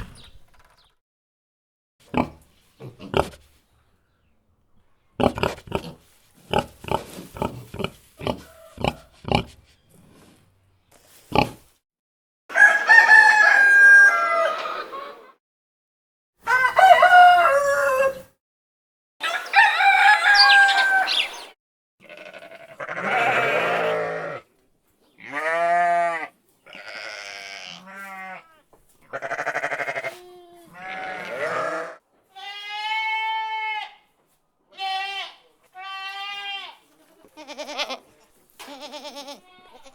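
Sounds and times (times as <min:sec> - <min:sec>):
rooster crowing: 0:12.5 - 0:15.0, 0:16.4 - 0:18.3, 0:19.2 - 0:21.4
goat bleating: 0:22.0 - 0:24.5, 0:25.2 - 0:34.0, 0:34.7 - 0:39.9.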